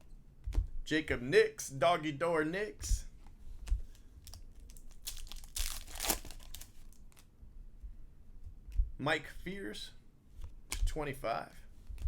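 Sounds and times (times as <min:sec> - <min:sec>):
wrapper crinkling and tearing: 0:04.2 - 0:07.3.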